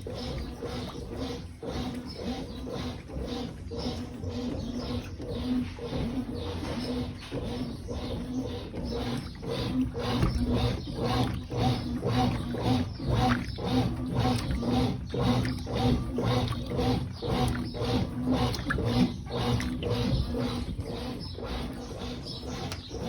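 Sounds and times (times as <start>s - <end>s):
washing machine agitating: 0.0s - 23.0s.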